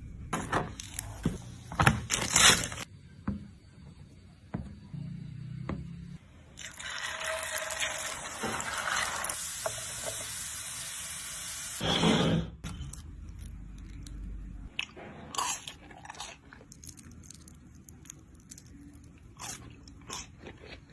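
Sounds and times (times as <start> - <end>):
crunching potato chips: 15.3 - 20.9.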